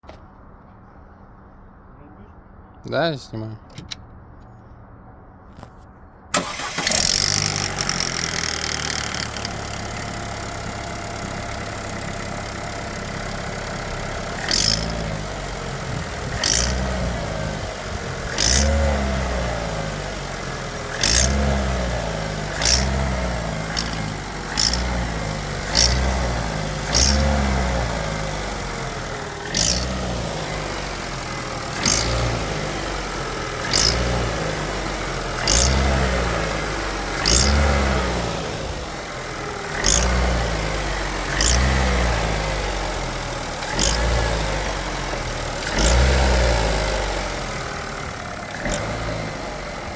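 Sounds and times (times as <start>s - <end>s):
car engine starting and idling: 0.0s - 49.9s
engine revving: 6.3s - 49.9s
engine knocking click: 6.4s - 10.6s, 14.4s - 15.1s, 15.9s - 16.9s, 20.9s - 21.4s, 22.6s - 23.0s, 23.7s - 25.0s, 25.8s - 26.1s, 26.9s - 27.3s, 31.8s - 32.2s, 33.6s - 34.1s, 35.4s - 35.8s.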